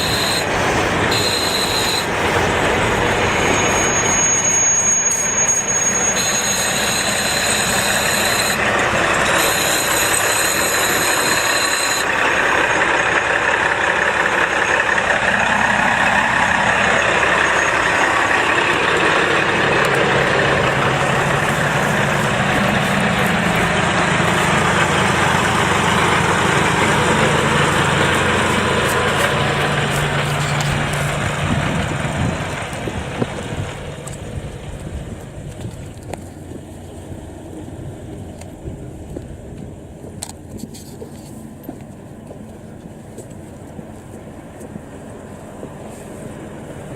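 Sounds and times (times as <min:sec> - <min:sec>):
crossing warning bell ringing: 0:00.0 - 0:34.1
diesel train engine and rail noise: 0:00.0 - 0:46.9.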